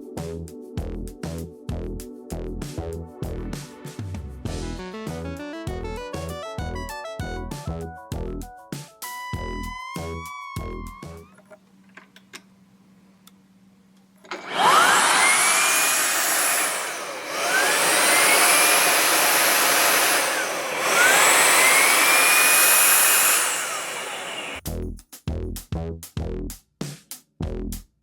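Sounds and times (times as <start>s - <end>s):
vacuum motor whine: 14.2s - 24.6s.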